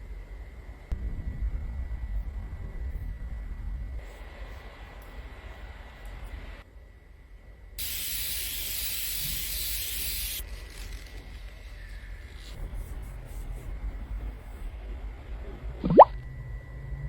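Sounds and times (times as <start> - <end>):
spray hissing: 7.8 - 11.2.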